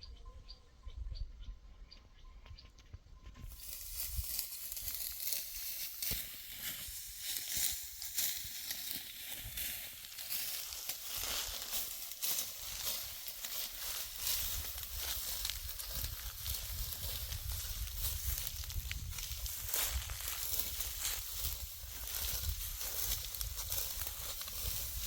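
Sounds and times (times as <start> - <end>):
wind rumble on microphone: 0.0 - 4.4, 14.2 - 25.0
dry stalks rustling and crunching: 3.4 - 25.0.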